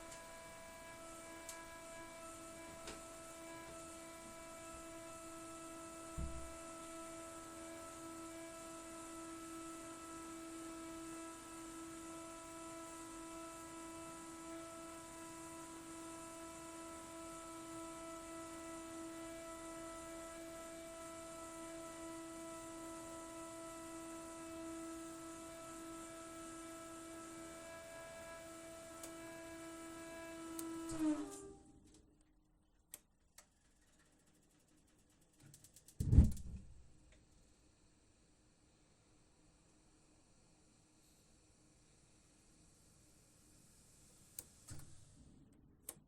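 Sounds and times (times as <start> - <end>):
gas boiler humming: 0.0 - 31.6
low thump: 6.2 - 6.6, 36.0 - 36.8.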